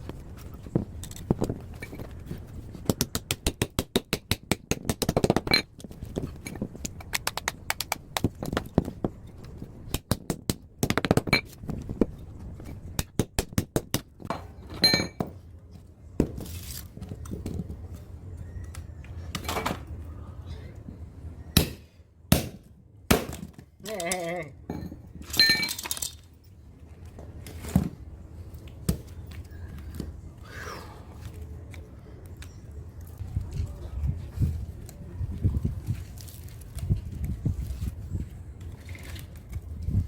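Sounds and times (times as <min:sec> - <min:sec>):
metallic clinks and knocks: 0:14.3 - 0:15.4, 0:24.1 - 0:26.6.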